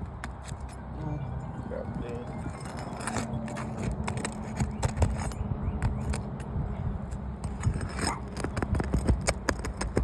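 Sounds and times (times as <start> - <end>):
continuous low rumble: 0.0 - 10.0
shingles clicking and scraping: 2.4 - 6.4, 7.1 - 10.0.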